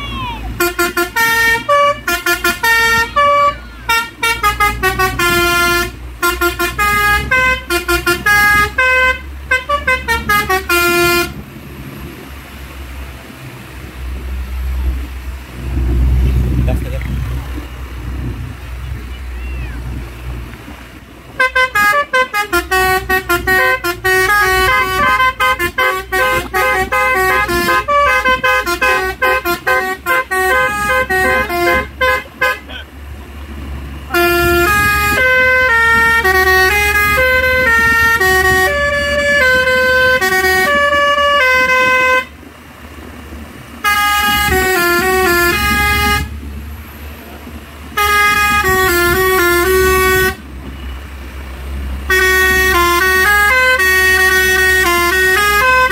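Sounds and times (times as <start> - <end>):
truck multi-tone horn playing tune: 0.0 - 11.5, 21.2 - 33.0, 33.9 - 42.5, 43.6 - 46.7, 47.8 - 55.9.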